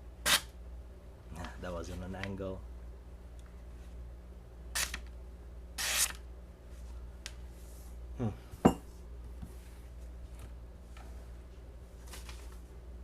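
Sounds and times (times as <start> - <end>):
paper rustling: 11.9 - 12.7.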